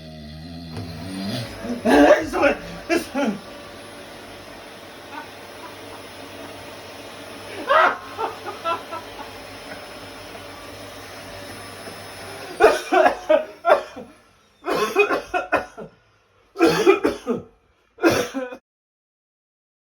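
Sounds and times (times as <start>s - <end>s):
person coughing and clearing throat: 12.6s - 16.0s, 16.6s - 18.6s.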